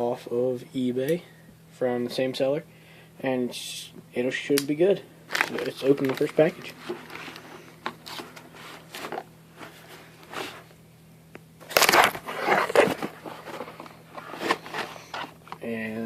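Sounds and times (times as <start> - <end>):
packaging crinkling and tearing: 5.3 - 9.2, 11.6 - 15.6.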